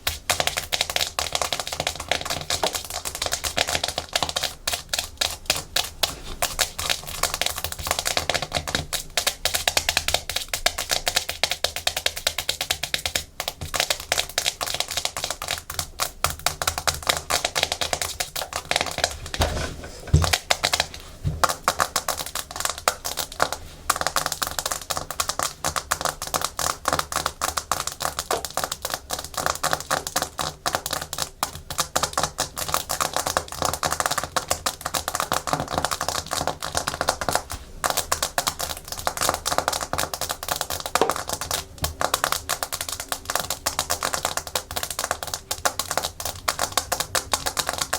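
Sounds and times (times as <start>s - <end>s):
heavier knocks: 19.2s - 20.4s.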